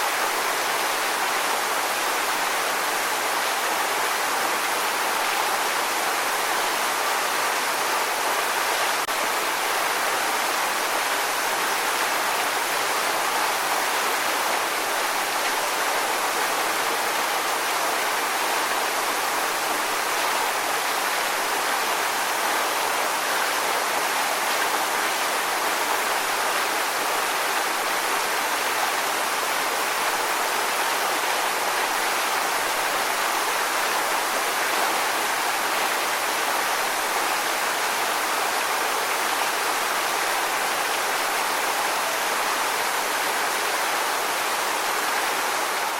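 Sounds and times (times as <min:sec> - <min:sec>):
waterfall rushing: 0:00.0 - 0:45.9.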